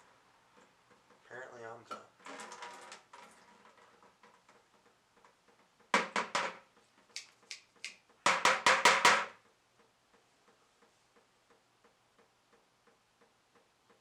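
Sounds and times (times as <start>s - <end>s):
sharp knocks or clatters: 1.9s - 9.5s
faint ticking: 9.4s - 14.0s.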